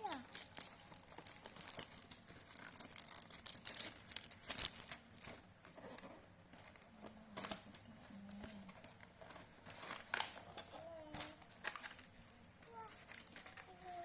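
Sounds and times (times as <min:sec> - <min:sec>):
packaging tearing: 0:00.0 - 0:05.4, 0:09.6 - 0:12.1
packaging crinkling and rustling: 0:00.0 - 0:14.0.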